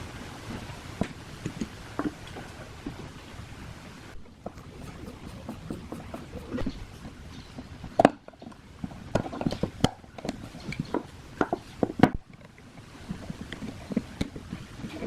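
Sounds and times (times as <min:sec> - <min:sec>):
clicks and knocks of hand work: 0:04.5 - 0:07.1.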